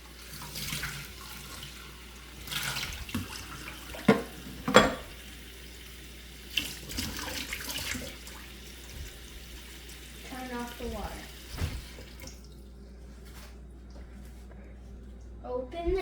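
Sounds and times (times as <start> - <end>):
faucet running into sink: 0.0 - 12.7
dishes clinking: 4.0 - 5.1.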